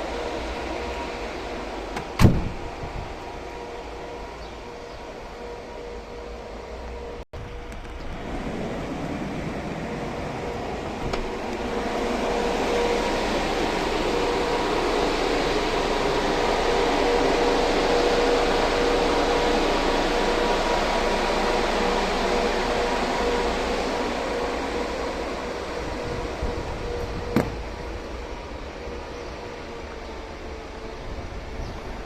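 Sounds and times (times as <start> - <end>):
refrigeration unit humming: 0.0 - 32.0
steady whine: 0.0 - 32.0.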